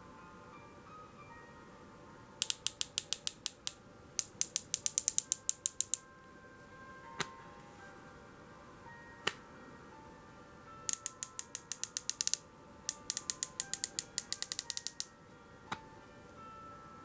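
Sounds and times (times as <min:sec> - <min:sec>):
scope turret clicking: 0:02.4 - 0:06.0, 0:10.9 - 0:15.1.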